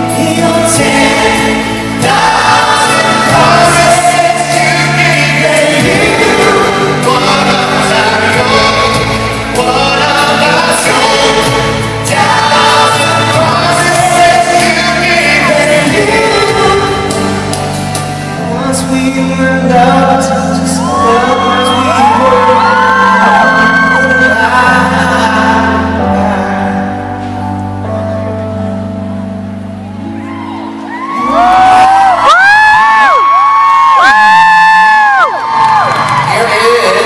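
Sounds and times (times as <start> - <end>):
vocal harmonies over pop music: 0.0 - 29.0, 30.8 - 37.0
audience shouting and whooping: 20.8 - 24.8, 29.9 - 37.0.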